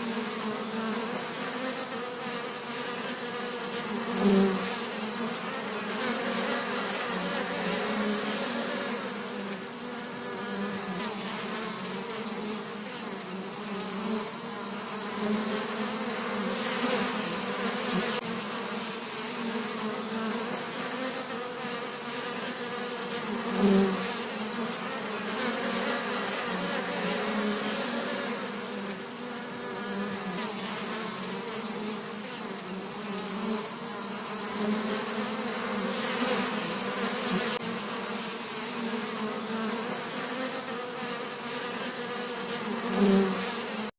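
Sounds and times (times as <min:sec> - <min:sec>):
bees buzzing: 0:00.0 - 0:43.9.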